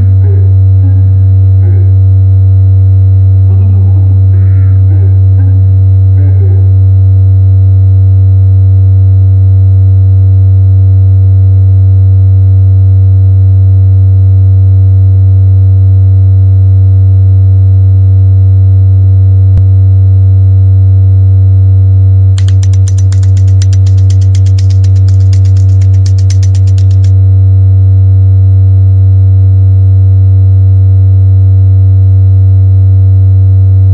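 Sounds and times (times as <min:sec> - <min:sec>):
low electronic drone: 0:00.0 - 0:07.8, 0:22.4 - 0:27.2
rapid high crackle of clicks: 0:22.4 - 0:27.1
sharp click: 0:22.4 - 0:27.1.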